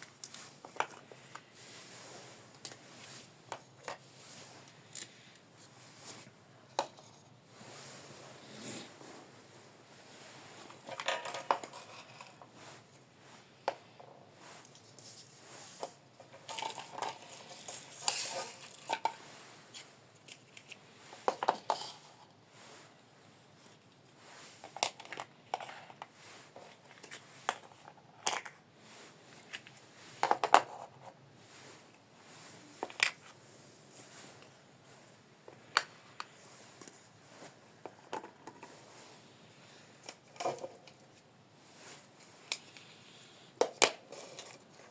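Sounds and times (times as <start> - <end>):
plastic toy pieces clattering: 10.8 - 12.4, 16.4 - 19.2, 26.9 - 28.6.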